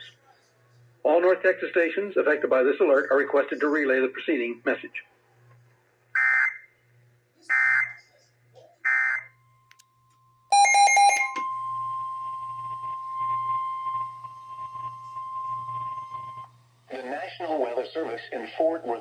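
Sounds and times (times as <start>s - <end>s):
multi-tone alert burst: 10.5s - 11.6s
steady high alert tone: 10.5s - 12.0s.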